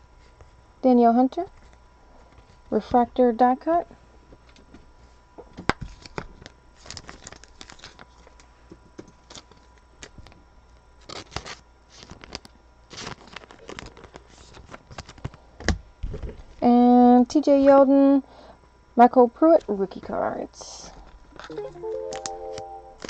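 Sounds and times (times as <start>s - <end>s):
trading cards being handled: 21.4s - 23.0s.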